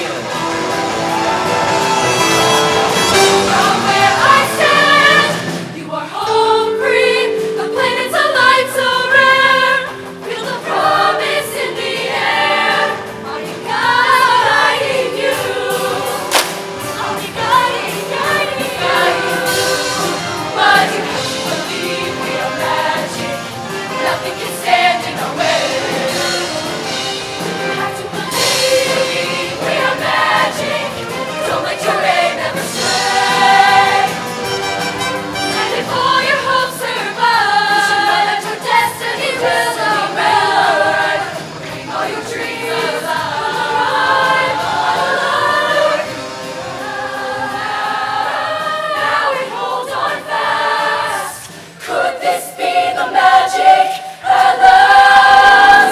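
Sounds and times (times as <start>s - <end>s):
instrumental backing: 0.0s - 51.0s
accented beats: 0.0s - 51.7s
choir singing in harmony: 0.0s - 55.9s.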